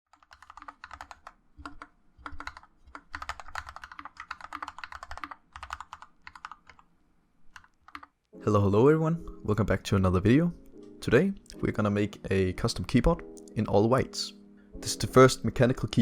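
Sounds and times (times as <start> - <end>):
mechanical keyboard typing: 0.1 - 6.9, 7.5 - 8.2.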